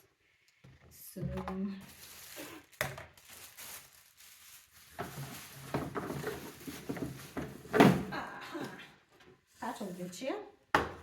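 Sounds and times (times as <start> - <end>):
plastic chair parts knocking: 5.1 - 8.1.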